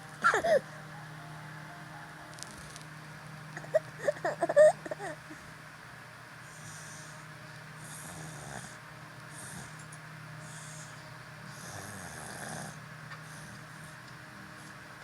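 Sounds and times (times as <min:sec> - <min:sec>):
steady low hum: 0:00.0 - 0:15.0
person snoring: 0:07.8 - 0:08.8, 0:11.5 - 0:12.8.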